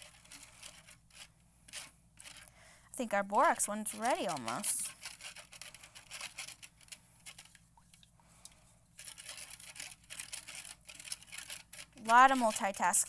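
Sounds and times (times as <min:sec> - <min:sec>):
spoons scraping bowls: 0:00.0 - 0:05.4, 0:09.0 - 0:13.0.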